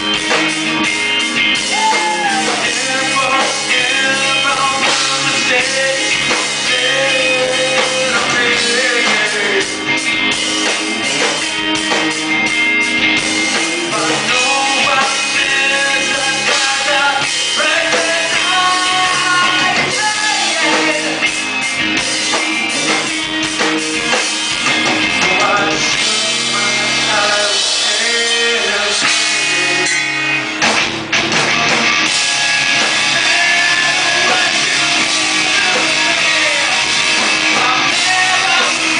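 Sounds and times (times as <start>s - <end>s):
drum kit: 0.0s - 38.9s
electric guitars: 0.0s - 38.9s
person singing: 1.6s - 10.0s, 13.5s - 21.3s, 25.0s - 30.2s, 32.9s - 38.9s.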